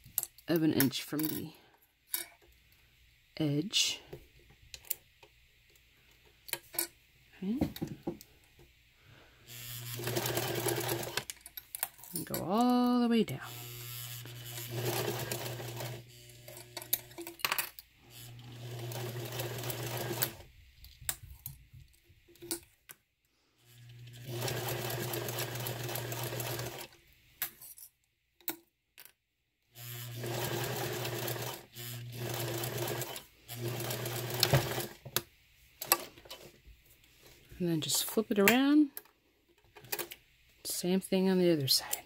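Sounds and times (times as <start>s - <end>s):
sewing machine stitching: 9.5s - 11.3s, 13.5s - 17.2s, 18.2s - 20.4s, 23.8s - 26.9s, 29.8s - 35.0s.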